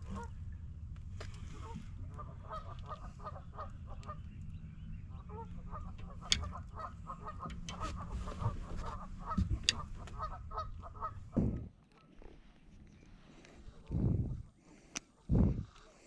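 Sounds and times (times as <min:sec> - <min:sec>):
steady low rumble: 0:00.0 - 0:11.8, 0:12.8 - 0:14.6, 0:15.2 - 0:15.9
geese honking: 0:01.6 - 0:04.2, 0:05.1 - 0:11.4.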